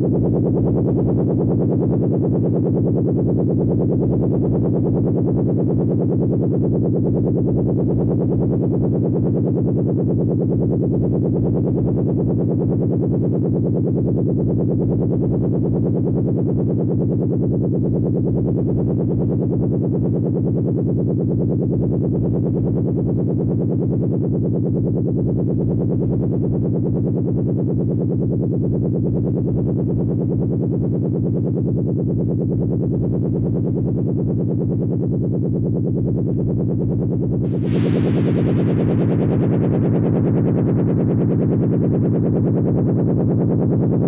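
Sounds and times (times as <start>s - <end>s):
electronic buzzing drone: 35.5s - 44.0s.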